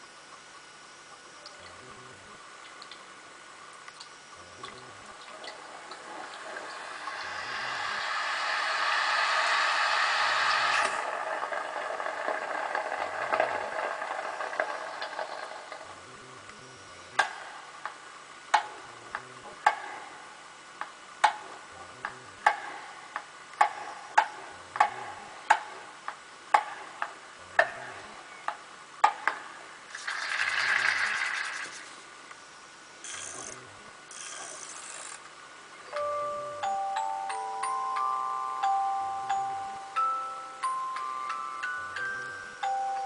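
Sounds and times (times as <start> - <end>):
rain hiss sound effect: 1.6 - 43.0.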